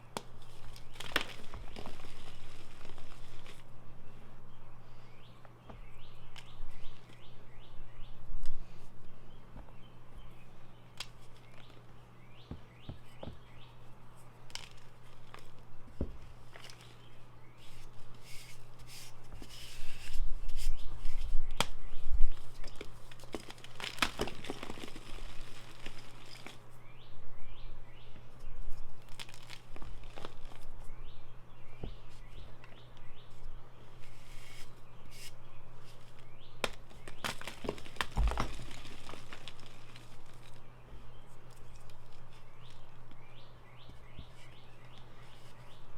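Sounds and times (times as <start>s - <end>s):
chalk crunching and cracking: 0.0s - 3.7s, 14.2s - 21.7s, 22.4s - 26.7s, 28.7s - 31.0s, 32.2s - 43.1s
small birds chirping: 0.0s - 45.9s.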